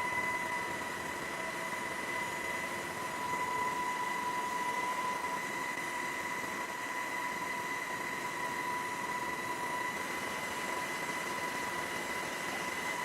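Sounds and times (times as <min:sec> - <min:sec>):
high-pitched whine: 0:00.0 - 0:13.0.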